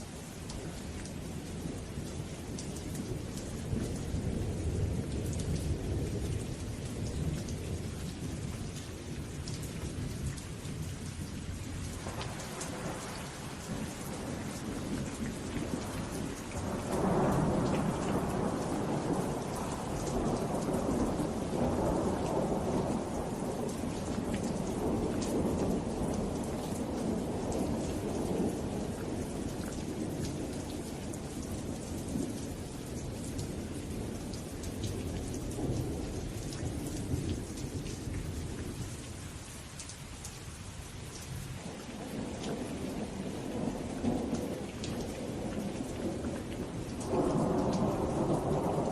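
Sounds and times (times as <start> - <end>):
heavy rain falling: 0.0 - 48.9
thunder rumbling: 41.8 - 48.9.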